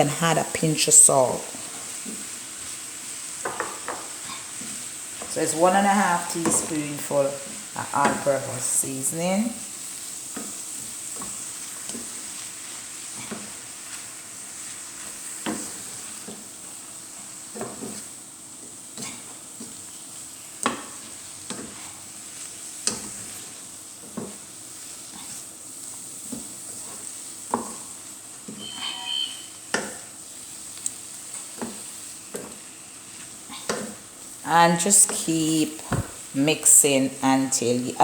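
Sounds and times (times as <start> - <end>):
vegetables sizzling in a pan: 0.0 - 38.0
spoon scraping a pan: 26.3 - 30.2.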